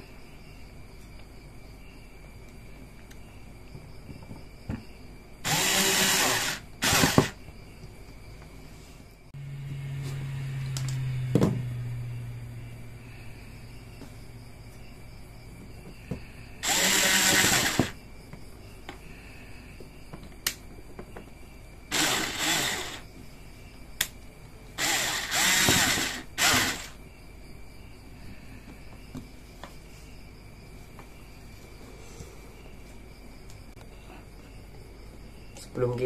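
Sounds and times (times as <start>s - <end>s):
electric screwdriver whirring: 5.5s - 7.4s, 16.6s - 18.0s, 21.9s - 23.0s, 24.8s - 27.0s.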